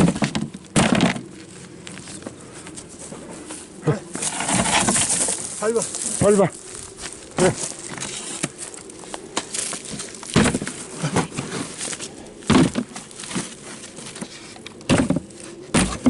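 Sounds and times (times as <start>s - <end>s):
dry branches cracking and snapping: 4.1s - 15.4s.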